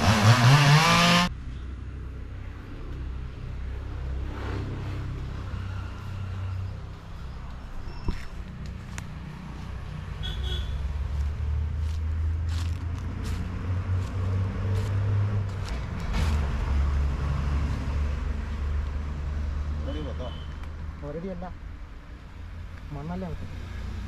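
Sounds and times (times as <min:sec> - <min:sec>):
large engine rumbling: 0:05.1 - 0:19.2.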